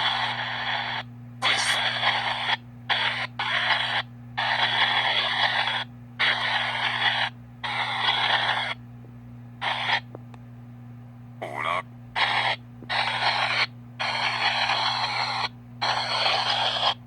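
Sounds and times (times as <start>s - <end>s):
radio static bursts: 1.4s - 8.8s, 11.4s - 17.0s.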